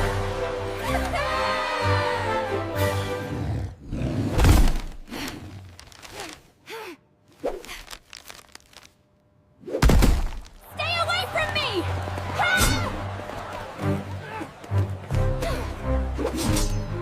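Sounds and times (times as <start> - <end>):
background music: 0.0 - 3.8, 10.7 - 17.0.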